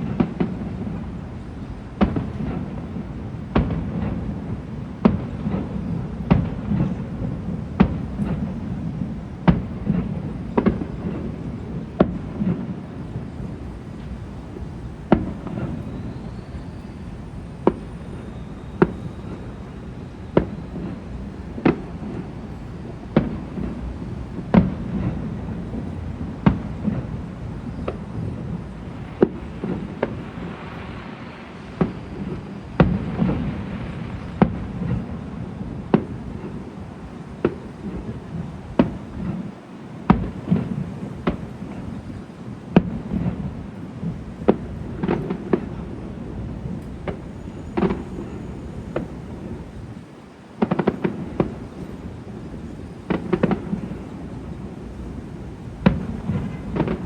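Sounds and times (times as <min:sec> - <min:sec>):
fireworks bangs: 0:00.0 - 0:57.0.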